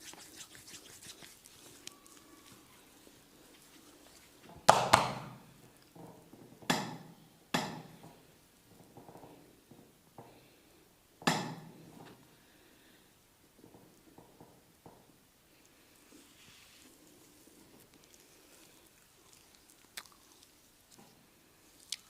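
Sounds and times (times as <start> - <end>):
sharp massage smacks: 4.7 - 5.3.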